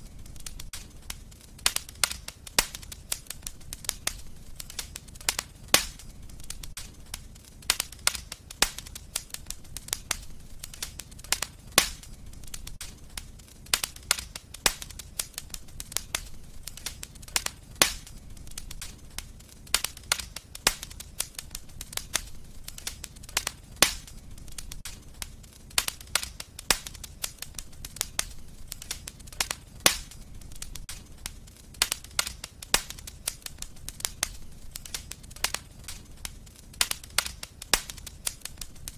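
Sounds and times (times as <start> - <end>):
wood fire crackling and popping: 0.0 - 38.9.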